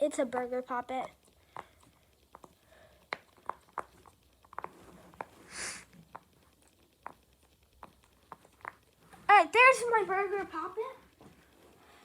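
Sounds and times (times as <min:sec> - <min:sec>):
short hiss: 0:05.4 - 0:06.0.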